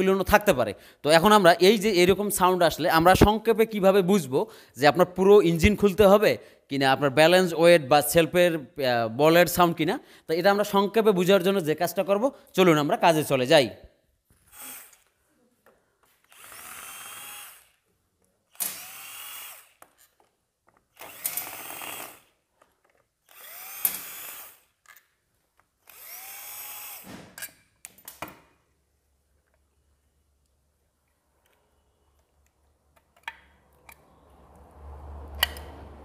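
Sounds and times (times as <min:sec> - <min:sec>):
power drill whining: 0:14.4 - 0:15.1, 0:16.2 - 0:17.8, 0:18.5 - 0:20.1, 0:20.9 - 0:22.3, 0:23.2 - 0:24.8, 0:25.8 - 0:27.1.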